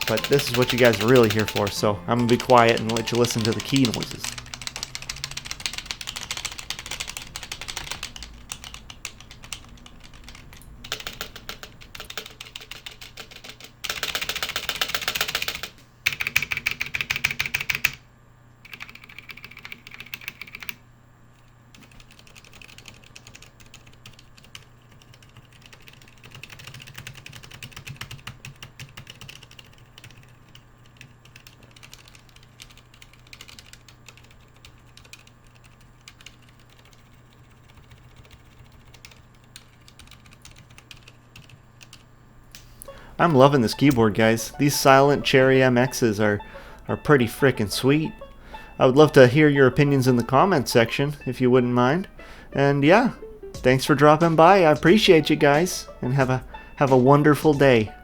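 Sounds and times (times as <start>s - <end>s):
typing on mechanical keyboard: 0.0s - 18.0s, 18.6s - 20.8s, 21.7s - 42.1s.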